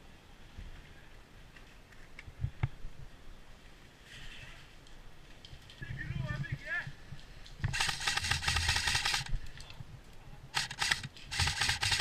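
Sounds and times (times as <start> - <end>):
airsoft gun firing bursts: 7.7 - 9.4, 10.6 - 12.0.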